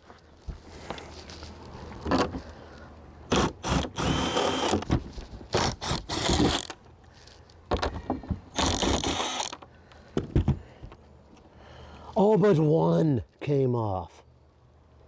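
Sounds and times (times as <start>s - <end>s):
power drill whirring in bursts: 3.3s - 4.9s, 5.6s - 6.7s, 8.6s - 9.6s.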